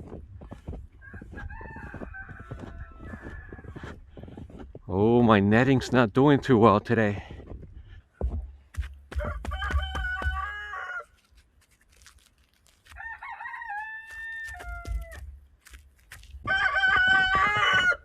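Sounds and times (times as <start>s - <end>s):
roosters crowing: 1.0s - 4.0s, 9.2s - 11.2s, 13.0s - 15.3s, 16.4s - 18.0s.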